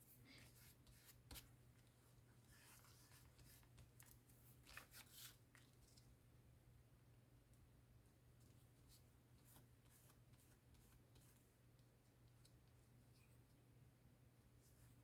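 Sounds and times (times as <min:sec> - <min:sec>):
paper rustling: 0:02.5 - 0:06.1.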